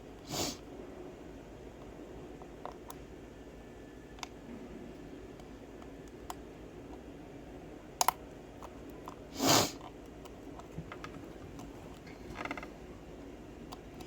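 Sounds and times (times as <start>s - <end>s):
rush of hiss: 0.3s - 0.6s.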